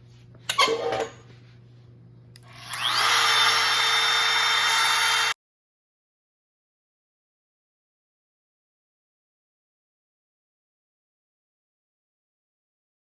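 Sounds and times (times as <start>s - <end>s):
router motor whining: 2.5s - 5.4s.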